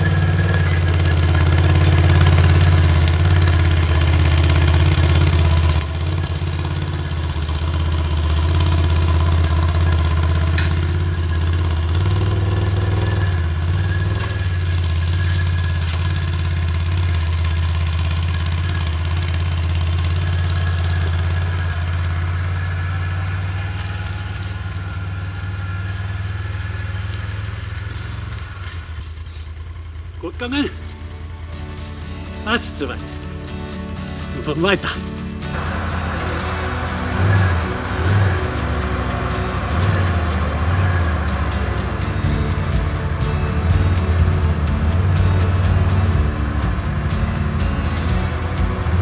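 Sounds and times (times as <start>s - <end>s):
engine running at low revs: 0.0s - 34.4s, 35.0s - 49.0s.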